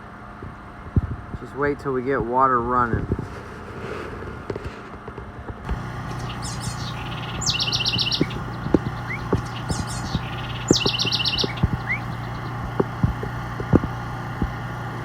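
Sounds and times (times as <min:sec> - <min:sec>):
low engine hum: 0:00.0 - 0:15.0
sharp clicks: 0:05.7 - 0:15.0
songbird singing high notes: 0:05.8 - 0:13.4.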